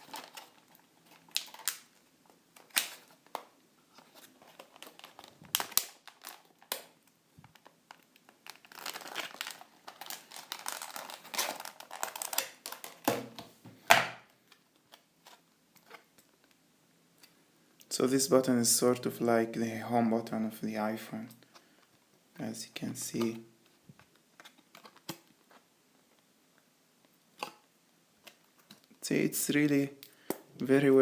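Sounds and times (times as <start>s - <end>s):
plastic packaging crinkling: 0.0s - 13.4s
packaging snap: 4.6s - 7.0s.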